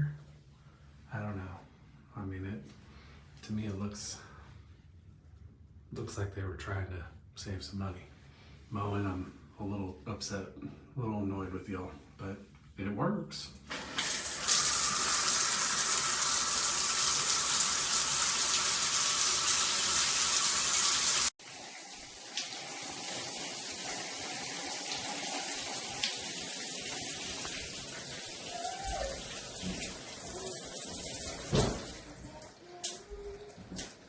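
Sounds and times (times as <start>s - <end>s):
shower head water spraying: 13.7s - 21.3s.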